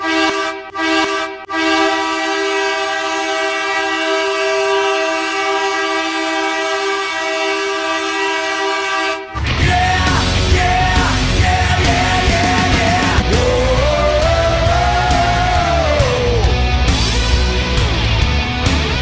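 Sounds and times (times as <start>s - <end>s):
hockey goal horn blasts: 0.0s - 9.4s.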